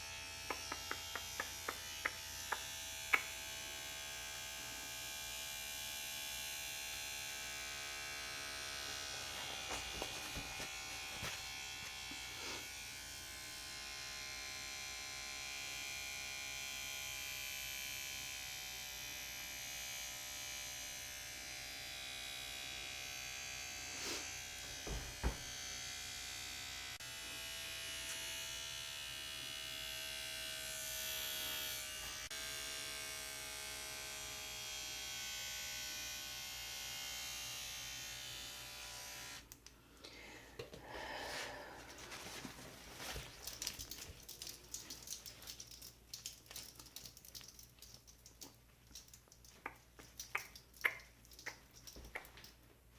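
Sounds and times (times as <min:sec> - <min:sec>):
tattoo machine buzzing: 0:00.0 - 0:39.6.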